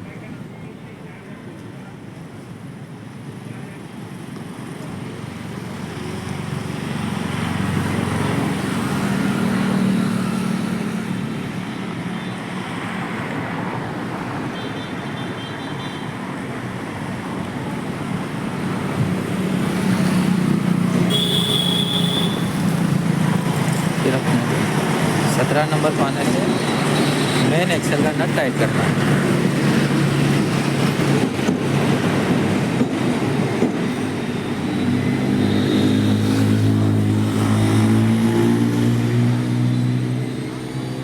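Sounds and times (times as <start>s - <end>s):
road traffic passing: 0.0s - 41.0s.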